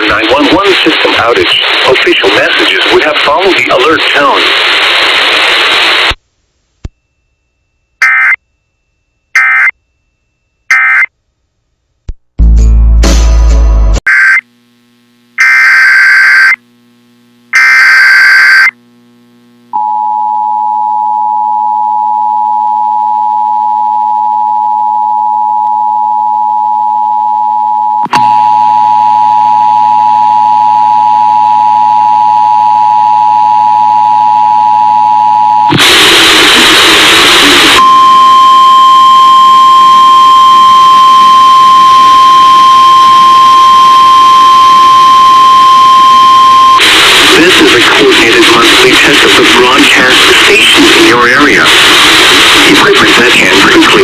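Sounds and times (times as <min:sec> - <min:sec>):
burst of static: 0:00.0 - 0:06.2, 0:35.7 - 0:38.3, 0:46.8 - 0:54.0
single steady tone: 0:19.7 - 0:31.9.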